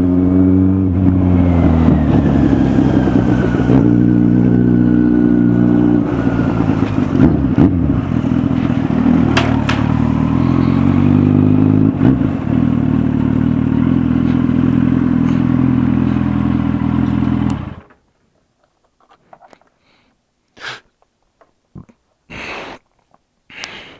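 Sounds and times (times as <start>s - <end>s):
motorcycle engine running: 0.0s - 17.9s.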